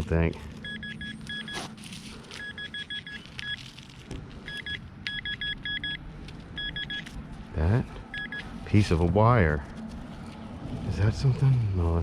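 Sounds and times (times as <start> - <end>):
metal detector high beeps: 0.6 - 1.6, 2.4 - 3.6, 4.5 - 6.0, 6.6 - 7.1, 8.1 - 8.5.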